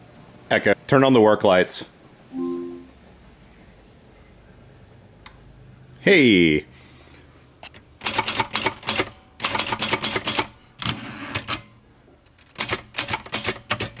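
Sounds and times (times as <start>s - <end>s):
typewriter key strikes: 12.4s - 14.0s.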